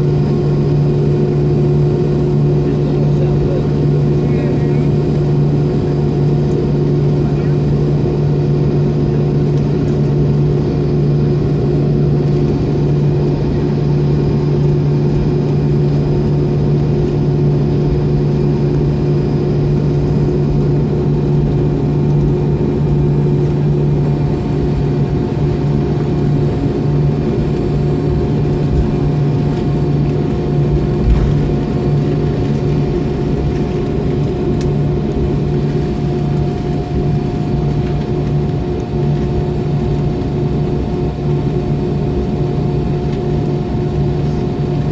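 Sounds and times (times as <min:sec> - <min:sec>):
jet engines idling: 0:00.0 - 0:44.9.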